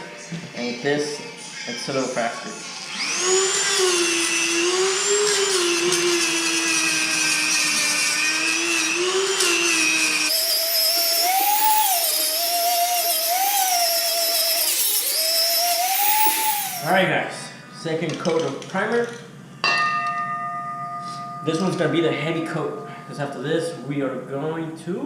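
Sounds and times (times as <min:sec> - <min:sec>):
rotary tool high whine: 0:00.0 - 0:17.1.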